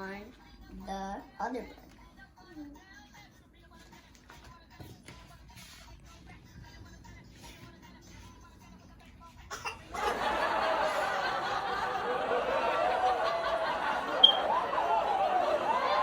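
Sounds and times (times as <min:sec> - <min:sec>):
people laughing and chattering: 0:09.9 - 0:16.0.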